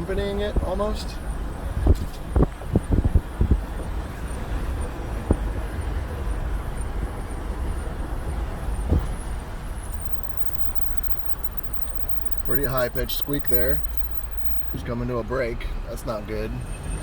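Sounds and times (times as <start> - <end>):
brakes rubbing: 0.0 - 14.8
road and tyre rumble: 0.0 - 17.0
high-pitched brake squeak: 8.8 - 14.8.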